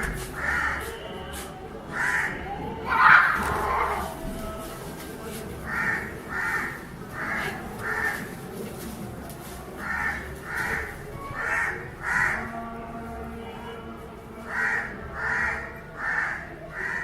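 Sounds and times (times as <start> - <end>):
crow cawing: 0.4 - 0.9, 1.9 - 4.2, 5.7 - 8.3, 9.8 - 12.6, 14.5 - 17.0.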